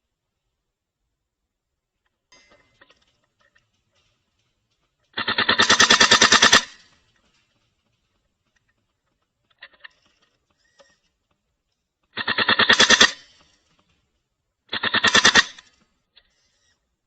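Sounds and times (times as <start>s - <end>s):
airsoft gun full-auto bursts: 5.2s - 6.9s, 12.1s - 13.4s, 14.7s - 15.8s.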